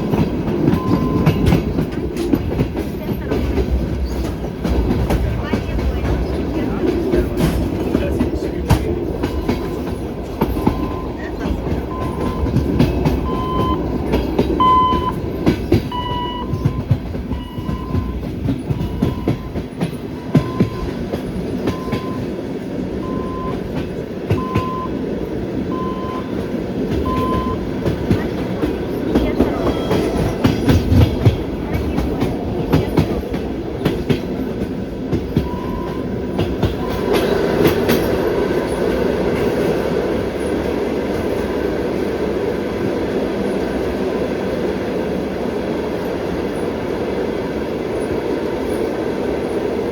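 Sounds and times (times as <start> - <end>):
train wheels clattering over rail joints: 0.0 - 44.1
train running rumble: 0.0 - 49.9.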